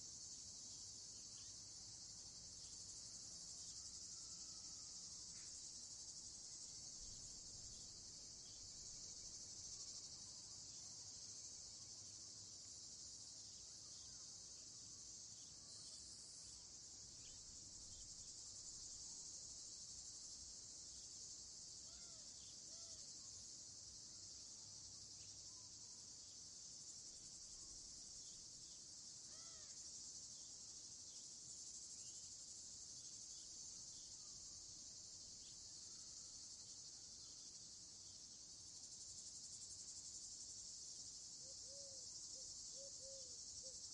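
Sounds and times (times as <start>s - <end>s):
crickets trilling: 0.0s - 43.9s.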